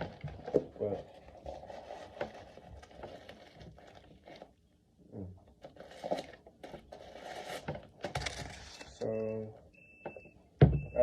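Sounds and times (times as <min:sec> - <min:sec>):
packaging rustling: 0:00.0 - 0:04.6, 0:05.6 - 0:09.1.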